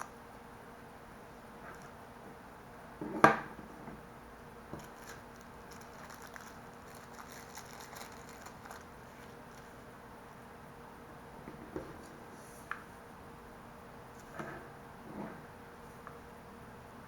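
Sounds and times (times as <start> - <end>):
small objects clicking and rustling: 4.8 - 8.9.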